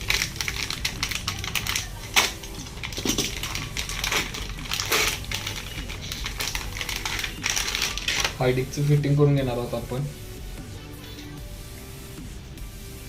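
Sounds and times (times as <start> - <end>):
packaging crinkling and clicking: 0.0 - 8.5
packaging snapping: 0.0 - 9.0.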